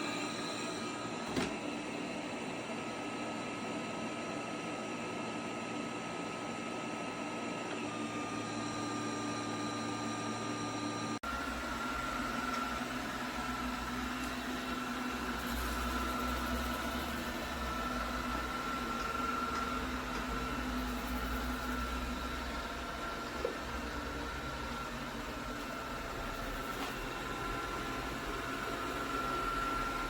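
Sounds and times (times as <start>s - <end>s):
robot vacuum whirring: 7.6s - 30.0s.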